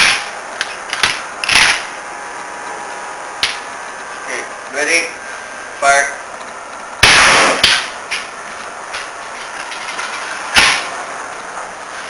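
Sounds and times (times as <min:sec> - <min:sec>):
airsoft shotgun shots: 0:07.0 - 0:07.9.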